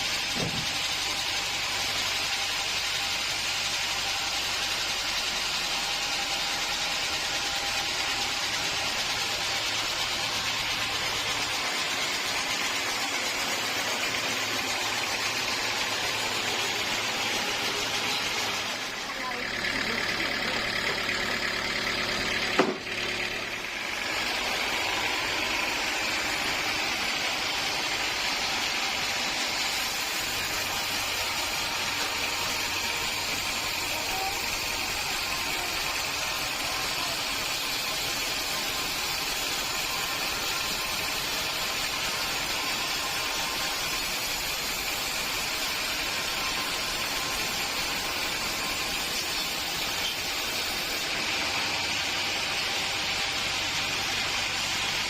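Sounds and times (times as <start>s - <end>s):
sawmill machinery running: 0.0s - 55.0s
sharp knock: 22.5s - 22.9s.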